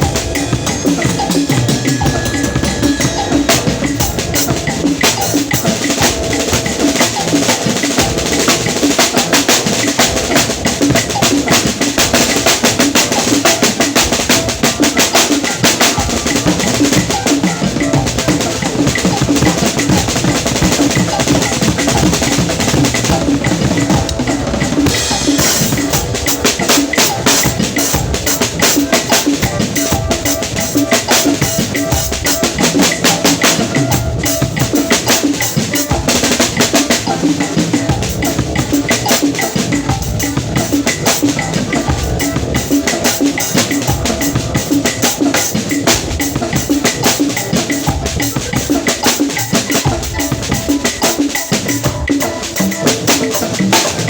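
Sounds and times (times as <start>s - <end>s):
drum kit playing: 0.0s - 54.0s.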